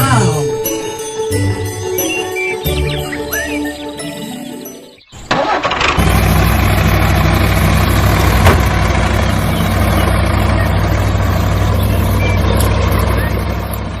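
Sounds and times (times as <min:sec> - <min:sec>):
engine idling: 0:05.3 - 0:14.0.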